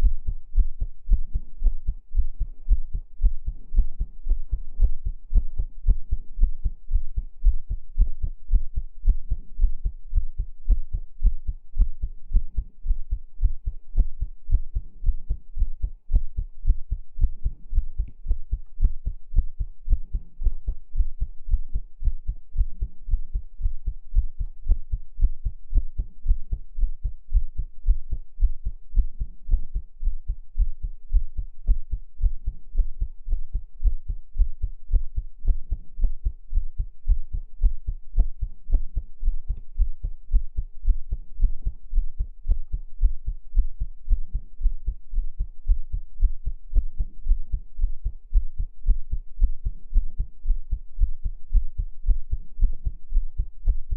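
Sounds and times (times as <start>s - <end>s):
heartbeat thumps: 0.0s - 53.9s.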